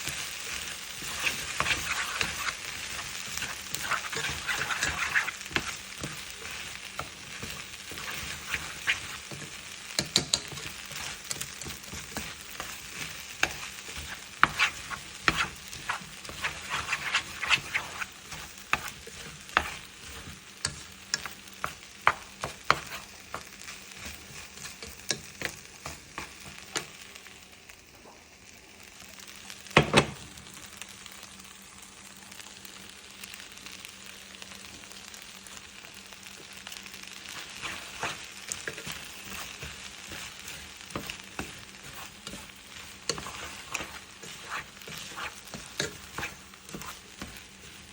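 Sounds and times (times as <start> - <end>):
spatula scraping a pan: 0.0 - 26.9, 37.2 - 47.9
rice sizzling in a pan: 0.0 - 47.9.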